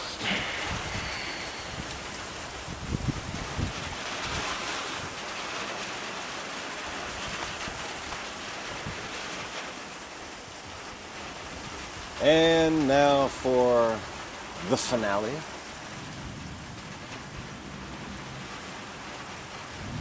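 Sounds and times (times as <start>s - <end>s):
steady rain hissing: 0.0s - 20.0s.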